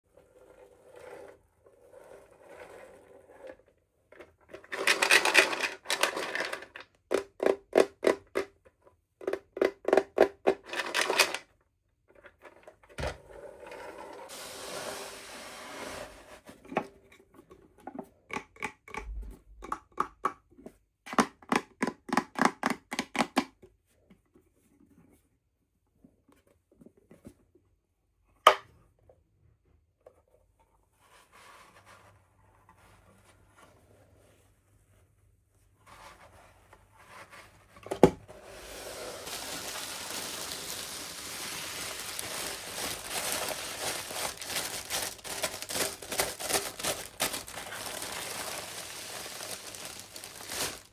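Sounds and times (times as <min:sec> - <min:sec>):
packaging rustling: 0:38.6 - 0:50.9.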